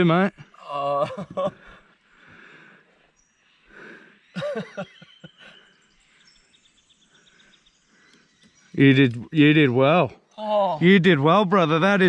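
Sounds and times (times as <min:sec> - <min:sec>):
faint rapid chirping: 0:01.6 - 0:10.9.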